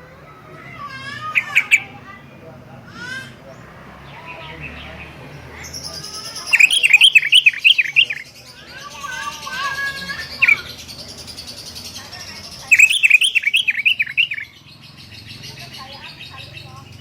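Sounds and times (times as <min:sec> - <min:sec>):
bird chirping: 0:00.6 - 0:02.2, 0:03.0 - 0:17.0
bird warbling: 0:00.6 - 0:02.2, 0:05.5 - 0:17.0.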